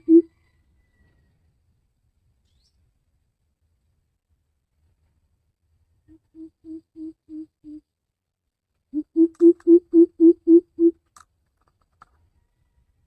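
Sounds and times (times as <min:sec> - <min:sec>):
bird deep hooting: 0:00.0 - 0:00.3, 0:06.1 - 0:07.8, 0:09.0 - 0:11.0.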